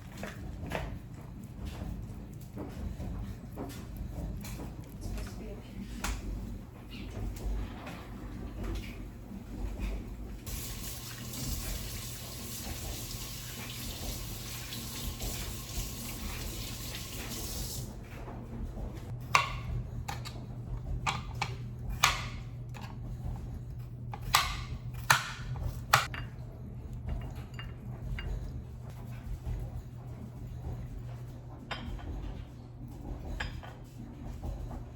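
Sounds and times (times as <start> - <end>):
tap running into sink: 10.5 - 17.8
dishes clinking and knocking: 19.3 - 23.5, 24.1 - 29.8, 31.5 - 34.9.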